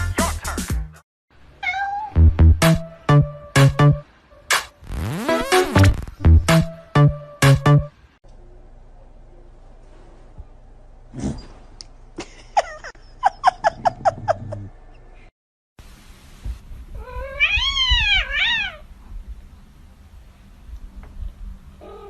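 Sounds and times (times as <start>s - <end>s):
cats meowing: 1.6s - 2.2s, 17.0s - 18.8s.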